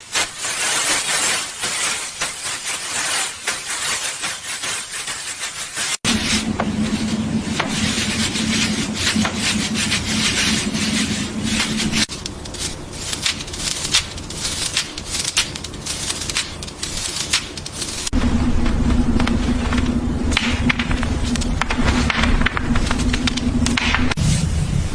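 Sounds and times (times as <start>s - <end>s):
cloth rubbing and rustling: 0.0s - 24.5s
steady low hum: 6.0s - 24.9s.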